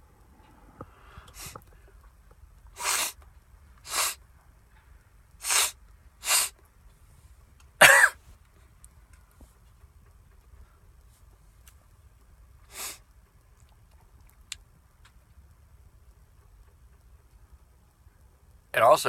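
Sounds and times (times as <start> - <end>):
man sneezing: 7.8 - 8.2.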